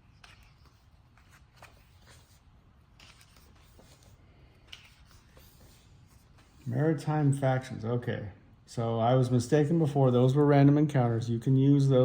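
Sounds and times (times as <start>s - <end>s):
paper pages rustling: 0.0s - 6.7s.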